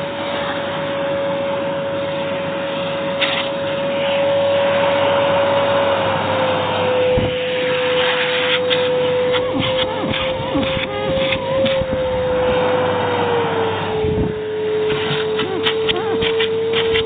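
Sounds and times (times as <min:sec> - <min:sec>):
vacuum cleaner running: 0:00.0 - 0:17.0
scattered clicks and knocks: 0:14.9 - 0:17.0.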